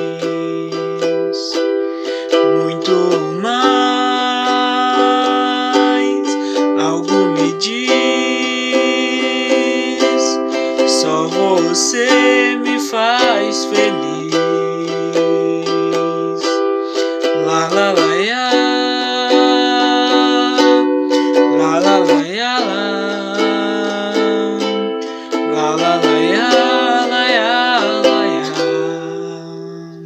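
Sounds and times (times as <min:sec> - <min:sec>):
held wordless vocal notes: 0:00.0 - 0:30.0
strummed acoustic string instrument: 0:00.0 - 0:30.0.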